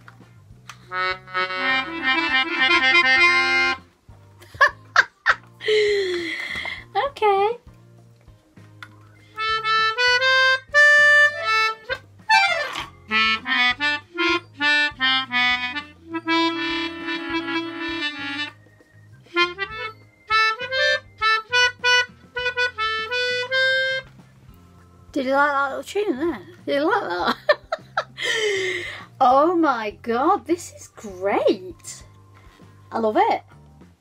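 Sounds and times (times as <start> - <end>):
melodica playing a tune: 0.9 - 3.9, 9.2 - 24.1.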